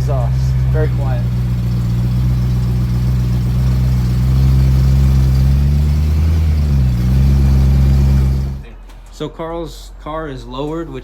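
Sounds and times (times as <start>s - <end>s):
car engine idling: 0.0s - 8.7s.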